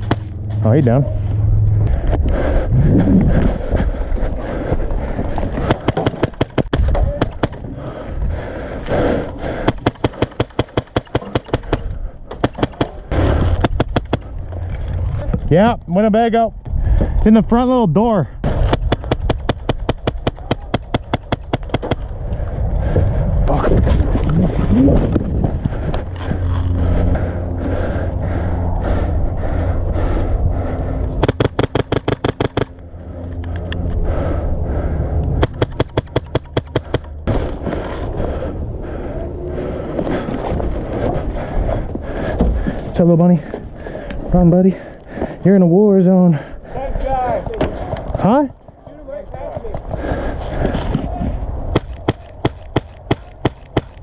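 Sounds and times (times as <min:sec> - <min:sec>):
rushes of noise: 0:00.0 - 0:15.5, 0:21.0 - 0:43.0
airsoft guns firing: 0:05.6 - 0:07.7, 0:09.6 - 0:14.3, 0:18.4 - 0:22.1, 0:31.2 - 0:32.8, 0:35.4 - 0:37.4, 0:51.7 - 0:54.0
airsoft rifle full-auto bursts: 0:31.2 - 0:32.7.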